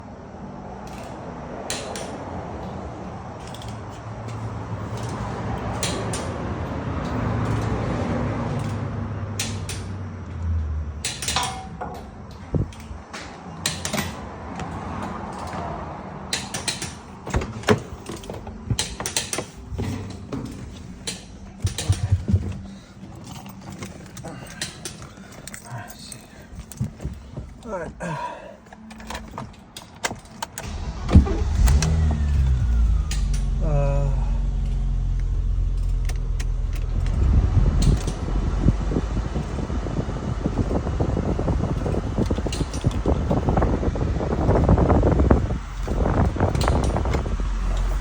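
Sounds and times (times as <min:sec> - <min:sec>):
sharp clicks and knocks: 0:11.0 - 0:25.7, 0:34.6 - 0:48.0
car engine running: 0:17.0 - 0:29.3, 0:30.1 - 0:48.0.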